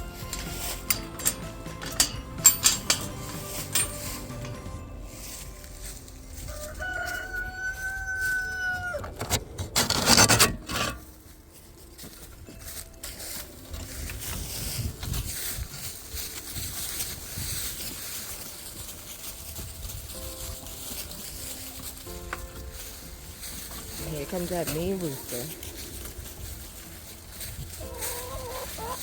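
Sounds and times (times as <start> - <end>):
rooster crowing: 6.5 - 9.1
loud scraping: 9.6 - 11.1.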